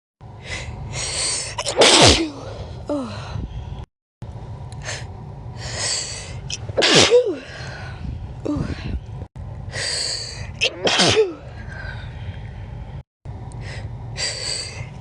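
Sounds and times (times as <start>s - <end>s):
person sneezing: 1.5s - 2.5s, 6.8s - 7.4s, 10.6s - 11.4s.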